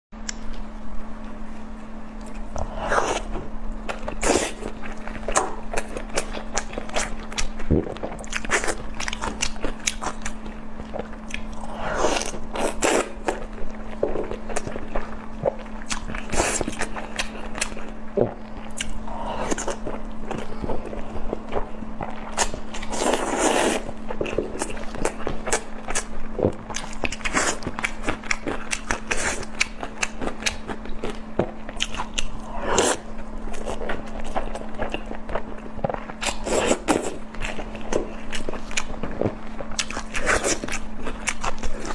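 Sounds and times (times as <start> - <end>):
low steady hum: 0.2 - 41.9
person chewing crunchy food: 1.4 - 41.9.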